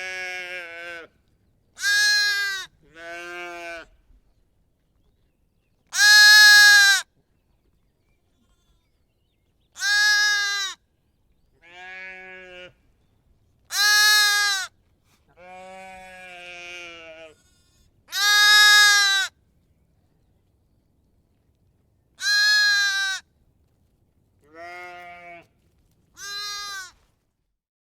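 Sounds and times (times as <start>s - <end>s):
lamb bleating: 1.8s - 3.9s, 6.0s - 7.0s, 9.8s - 10.8s, 11.6s - 12.7s, 13.7s - 14.7s, 15.4s - 19.3s, 22.2s - 23.2s, 24.5s - 25.5s, 26.2s - 27.0s.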